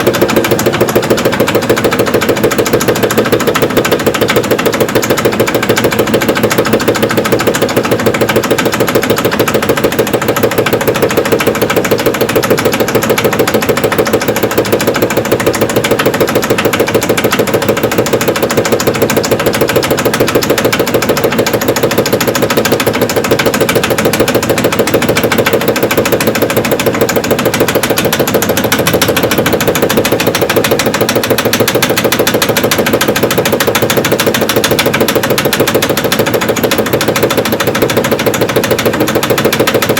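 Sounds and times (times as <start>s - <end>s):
rapid bearing knocking: 0.0s - 39.9s
washing machine spinning: 0.0s - 39.9s.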